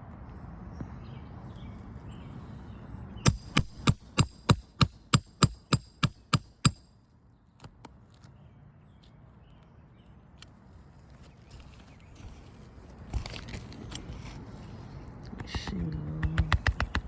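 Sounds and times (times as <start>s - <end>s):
hammer striking metal tool: 3.3s - 6.9s.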